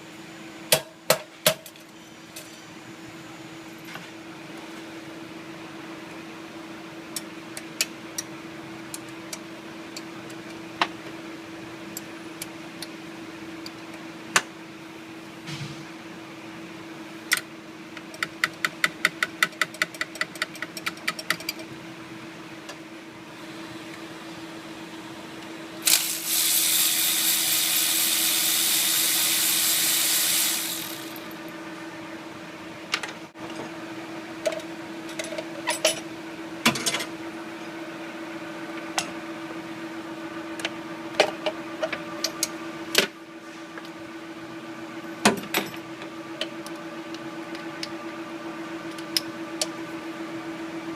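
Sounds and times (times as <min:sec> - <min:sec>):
loud steady hiss: 0:25.8 - 0:31.4.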